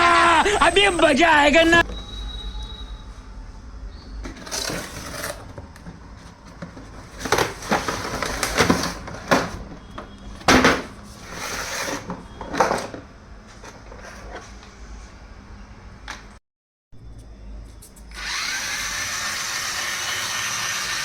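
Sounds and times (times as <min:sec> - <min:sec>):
box rustling and clattering: 0:04.2 - 0:14.5.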